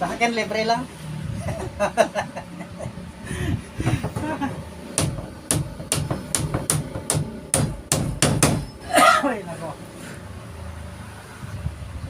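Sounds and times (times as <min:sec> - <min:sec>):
hammer driving nails into wood: 0:05.0 - 0:08.7.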